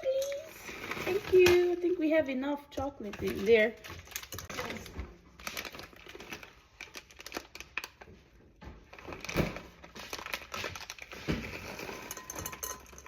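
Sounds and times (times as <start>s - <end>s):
utensils clicking in a bowl: 11.7s - 13.0s.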